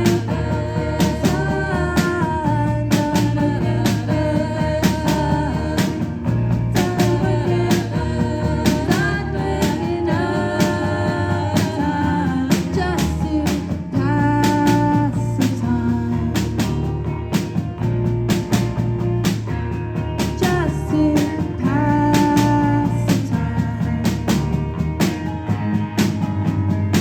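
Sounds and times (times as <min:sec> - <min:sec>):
person singing: 0:00.0 - 0:16.4
guitar: 0:00.0 - 0:27.0
live rock band playing: 0:00.0 - 0:27.0
steady drum beat: 0:00.0 - 0:27.0.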